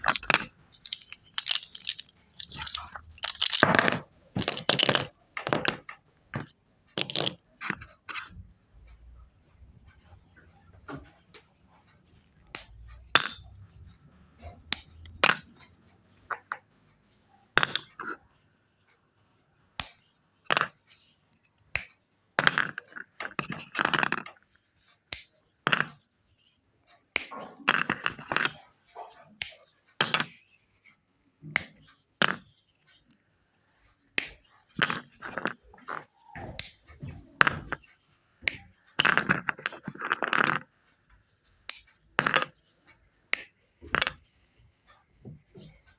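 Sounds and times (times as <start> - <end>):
wet chalk crunching and snapping: 0.0 - 3.7.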